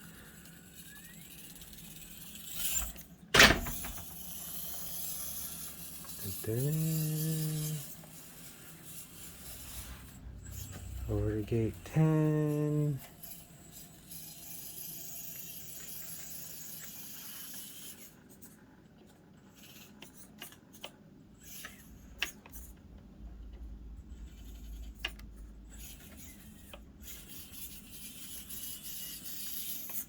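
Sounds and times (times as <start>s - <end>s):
toy car motor hiss: 0.0s - 18.6s, 19.5s - 22.7s, 24.2s - 30.0s
low rumble: 22.6s - 27.2s.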